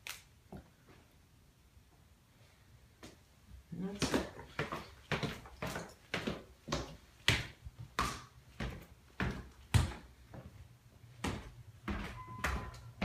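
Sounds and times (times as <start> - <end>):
footsteps on wooden floor: 4.0 - 13.0
faint high beep: 12.1 - 13.0.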